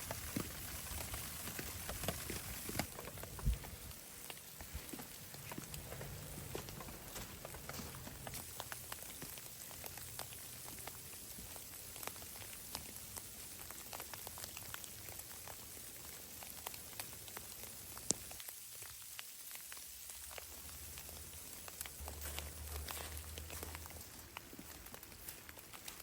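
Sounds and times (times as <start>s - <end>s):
precipitation pattering: 0.0s - 15.6s
faint steady hiss: 0.0s - 26.0s.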